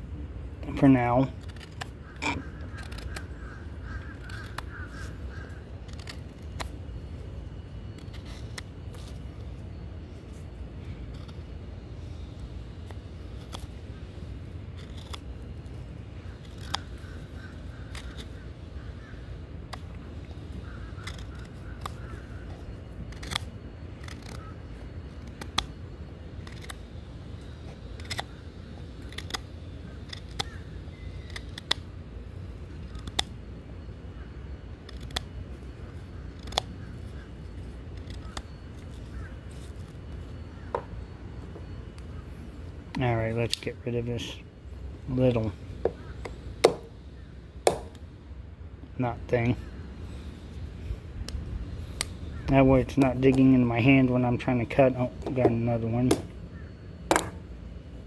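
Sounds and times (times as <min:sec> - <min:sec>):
street traffic rumble: 0:00.0 - 0:58.0
knife chipping wood: 0:01.2 - 0:03.4, 0:05.8 - 0:06.8, 0:14.8 - 0:15.3, 0:16.3 - 0:17.1, 0:20.9 - 0:24.5, 0:30.0 - 0:30.6, 0:36.3 - 0:36.8, 0:45.9 - 0:46.9, 0:47.7 - 0:48.0.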